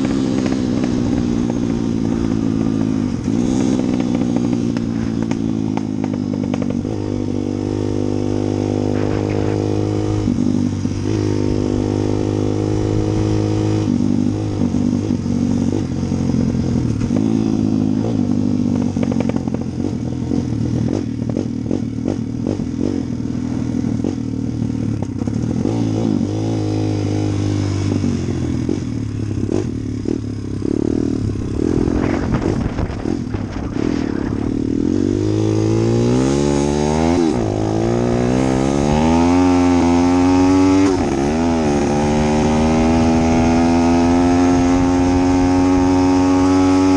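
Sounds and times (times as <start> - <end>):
engine running: 0.0 - 46.9.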